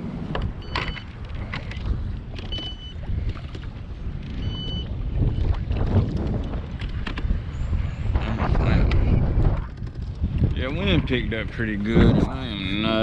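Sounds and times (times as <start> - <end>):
wind rumbling on microphone: 0.0 - 13.0.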